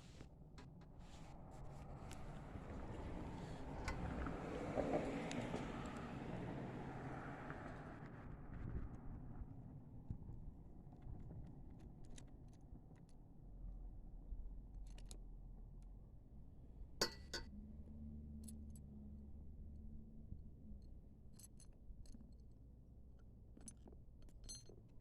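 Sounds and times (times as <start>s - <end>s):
small metal clicks and clinks: 14.7s - 15.3s, 20.8s - 22.6s, 23.2s - 25.0s.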